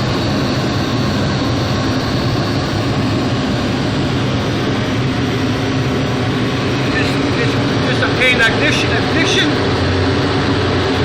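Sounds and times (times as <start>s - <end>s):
boiler burner and fan: 0.0s - 11.0s.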